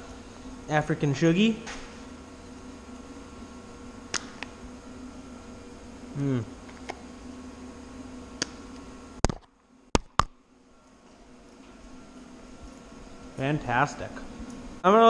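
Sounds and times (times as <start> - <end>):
welder electric buzz: 0.0 - 9.2.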